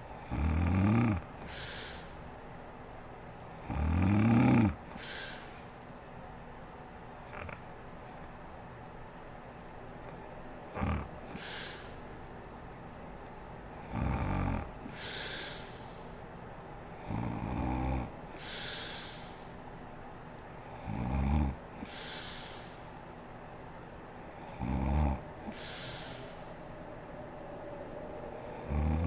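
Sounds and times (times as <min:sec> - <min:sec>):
breathy hiss: 0:00.0 - 0:02.3, 0:03.5 - 0:05.8, 0:10.8 - 0:12.2, 0:13.8 - 0:16.3, 0:17.0 - 0:19.7, 0:20.7 - 0:23.1, 0:24.3 - 0:29.0
woman snoring: 0:00.2 - 0:02.1, 0:03.6 - 0:05.5, 0:10.8 - 0:11.9, 0:13.9 - 0:15.9, 0:17.1 - 0:19.4, 0:20.8 - 0:22.7, 0:24.4 - 0:26.6, 0:28.4 - 0:29.0.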